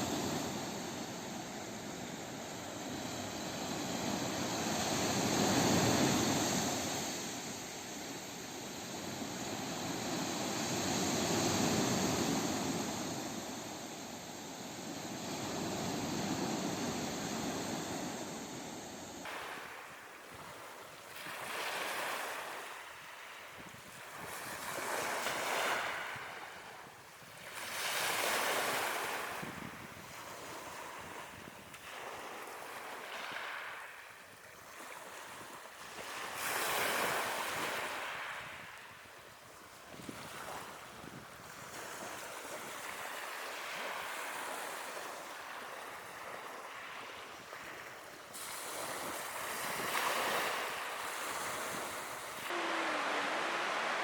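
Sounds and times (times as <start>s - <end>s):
low wavering tone: 0.0s - 19.3s
ocean waves breaking on shore: 0.0s - 54.0s
wind: 0.0s - 54.0s.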